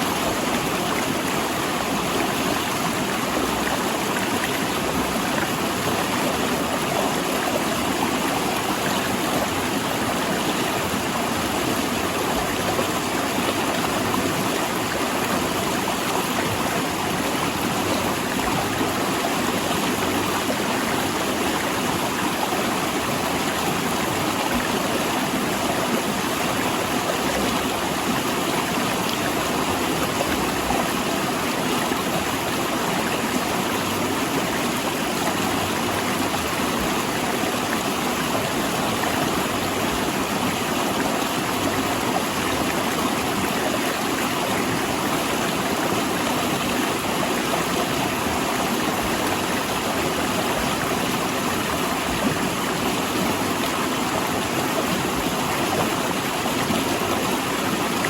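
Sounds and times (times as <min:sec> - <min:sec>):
river rushing between rocks: 0:00.0 - 0:58.0.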